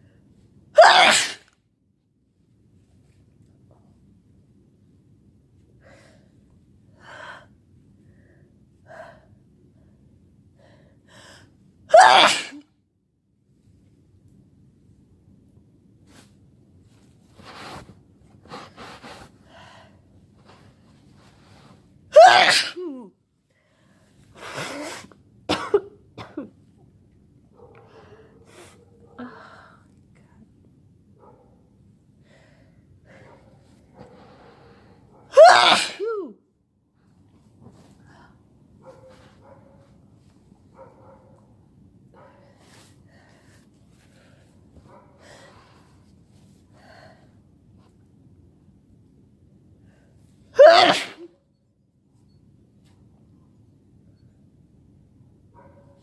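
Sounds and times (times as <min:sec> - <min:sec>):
person sneezing: 0:00.8 - 0:01.5, 0:11.9 - 0:12.6, 0:22.2 - 0:23.1, 0:35.3 - 0:36.4, 0:50.6 - 0:51.3.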